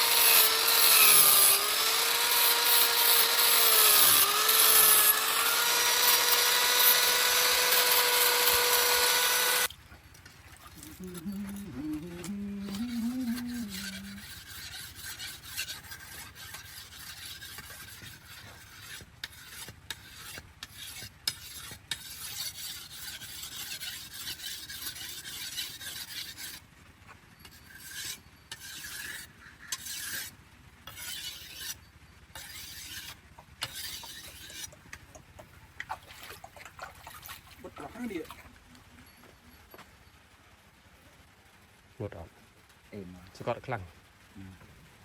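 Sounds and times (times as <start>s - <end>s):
knife blade scraping on abrasive: 10.8s - 26.6s, 27.4s - 30.3s, 30.9s - 34.8s.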